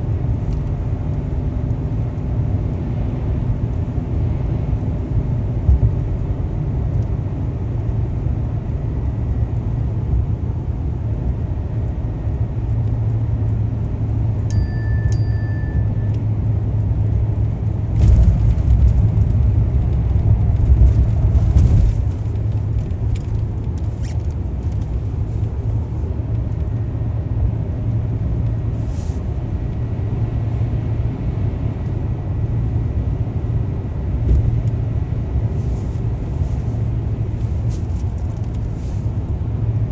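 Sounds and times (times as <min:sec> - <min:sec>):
car tyres and engine rumble: 0:00.0 - 0:39.9
short electronic beeps: 0:14.5 - 0:16.2.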